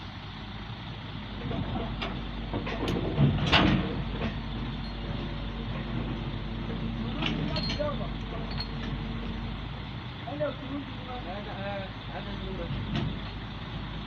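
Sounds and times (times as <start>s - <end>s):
heavy diesel machinery running: 0.0s - 14.0s
metallic knocks and clank: 1.4s - 9.4s.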